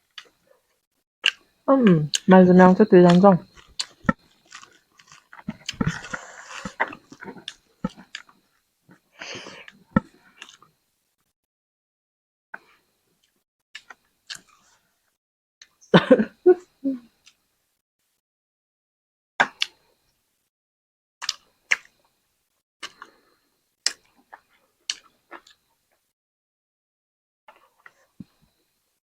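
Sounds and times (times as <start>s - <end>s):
chewing and lip smacks: 3.6s - 8.3s.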